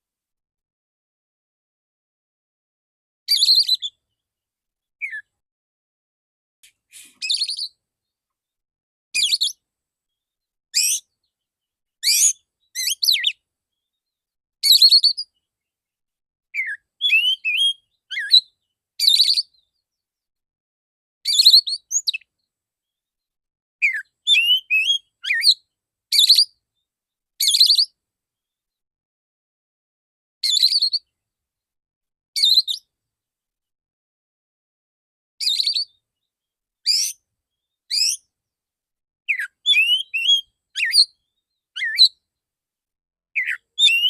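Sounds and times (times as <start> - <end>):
bird singing whistled phrases: 3.3 - 4.0, 5.0 - 5.3, 6.9 - 7.8, 9.2 - 9.6, 10.8 - 11.1, 12.0 - 13.4, 14.6 - 15.3, 16.6 - 19.5, 21.3 - 22.3, 23.8 - 26.5, 27.4 - 27.9, 30.4 - 31.1, 32.4 - 32.9, 35.4 - 36.0, 36.9 - 37.2, 37.9 - 38.2, 39.3 - 41.2, 41.8 - 42.2, 43.4 - 44.0.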